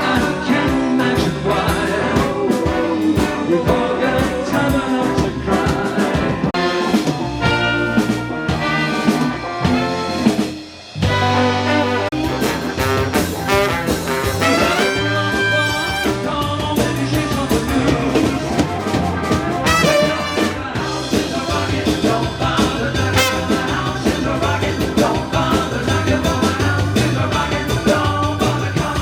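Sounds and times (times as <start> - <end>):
live horn band playing: 2.6 - 3.5, 6.2 - 16.5, 18.6 - 21.1, 23.1 - 24.0.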